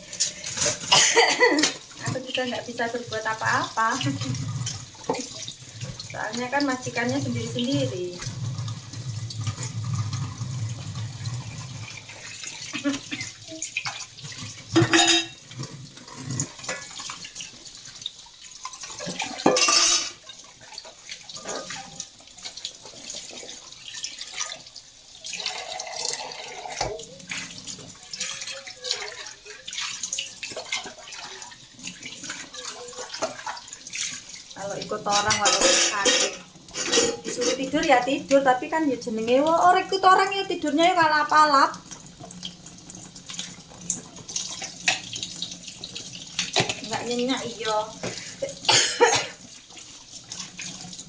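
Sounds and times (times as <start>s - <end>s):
tap water running into sink: 0.0s - 51.0s
knocks and clinks of dishes: 14.8s - 15.4s, 19.0s - 20.2s, 35.2s - 37.6s.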